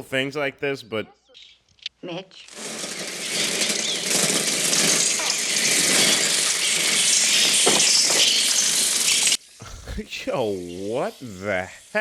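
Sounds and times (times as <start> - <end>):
rush of fluttering wings: 2.4 - 9.4.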